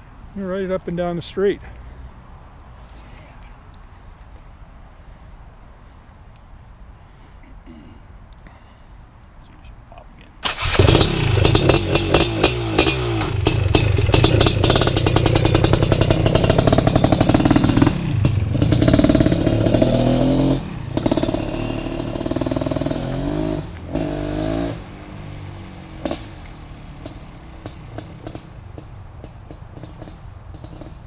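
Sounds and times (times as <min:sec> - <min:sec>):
motorcycle engine revving: 0:10.4 - 0:31.0.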